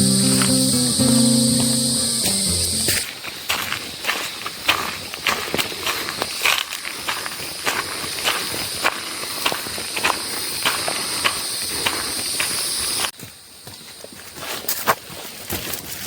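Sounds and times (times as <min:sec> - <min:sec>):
high-pitched buzz: 0:00.0 - 0:03.0
footsteps on forest trail: 0:00.0 - 0:16.0.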